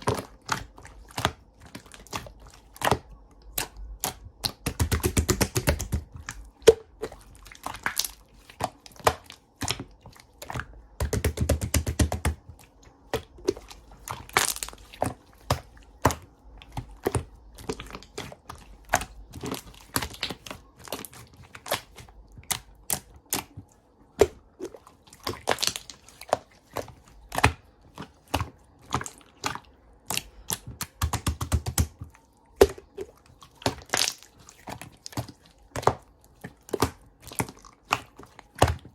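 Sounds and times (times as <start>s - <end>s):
clicks and taps of objects: 30.1s - 33.0s.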